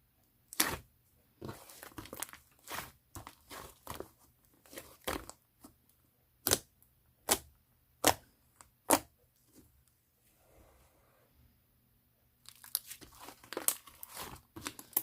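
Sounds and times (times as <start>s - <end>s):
slime squished and stretched: 0.5s - 0.8s, 1.5s - 5.4s, 6.4s - 9.2s.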